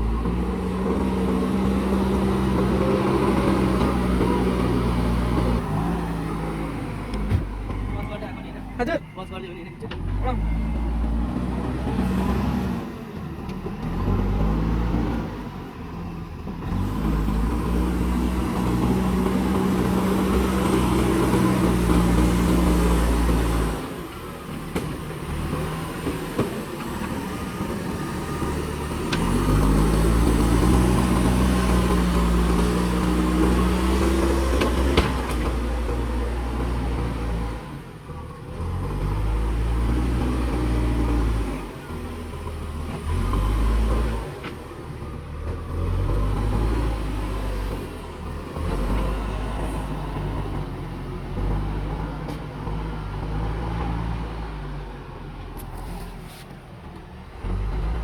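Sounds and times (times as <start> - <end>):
diesel engine revving: 0.0 - 58.0.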